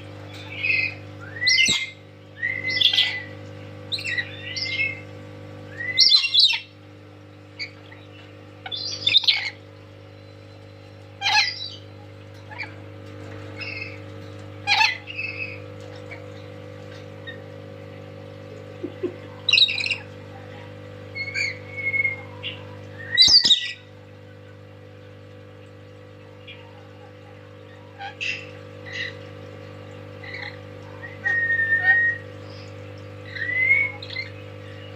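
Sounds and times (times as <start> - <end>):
steady background hum: 0.0 - 34.9
parrot squawking and chirping: 0.3 - 5.0, 5.9 - 6.8, 7.6 - 9.6, 11.2 - 12.8, 13.6 - 14.0, 14.6 - 16.3, 19.4 - 20.2, 21.1 - 23.9, 27.7 - 29.3, 30.2 - 34.9.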